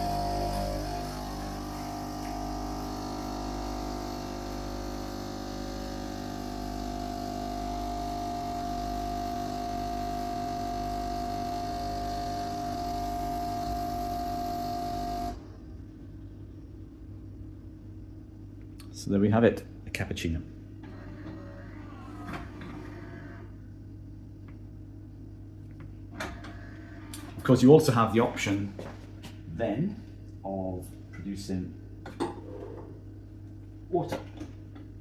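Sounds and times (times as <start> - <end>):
coffee machine pump humming: 0.0 - 15.8.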